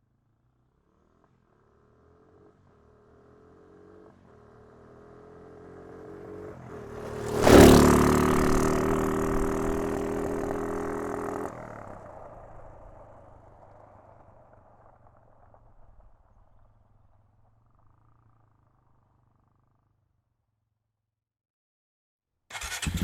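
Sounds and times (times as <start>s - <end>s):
quad bike engine passing: 0.4s - 16.1s, 22.5s - 23.0s.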